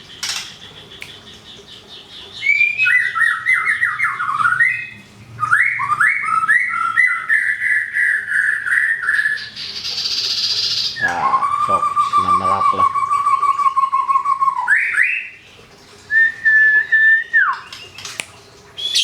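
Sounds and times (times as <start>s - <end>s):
songbird warbling song: 0.0s - 15.3s, 16.1s - 19.0s
soft high chirps: 18.8s - 19.0s.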